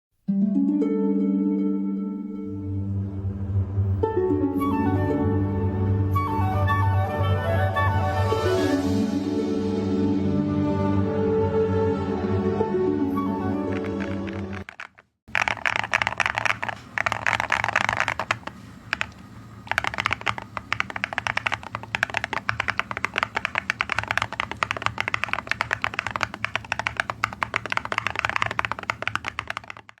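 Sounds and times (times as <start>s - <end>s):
fast typing on mechanical keyboard: 13.6s - 30.0s.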